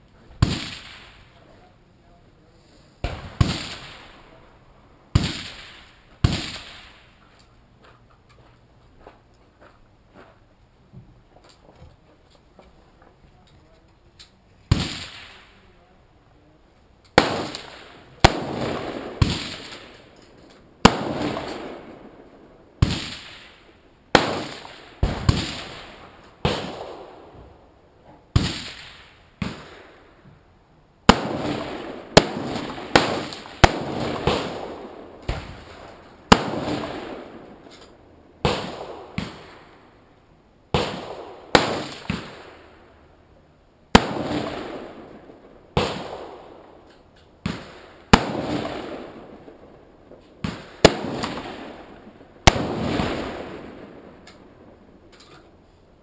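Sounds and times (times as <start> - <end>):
rifle shots with echo: 0.4 - 1.4, 3.0 - 4.5, 5.1 - 7.2, 14.7 - 15.7, 17.1 - 27.7, 28.3 - 30.1, 31.1 - 40.0, 40.7 - 43.0, 43.9 - 55.1.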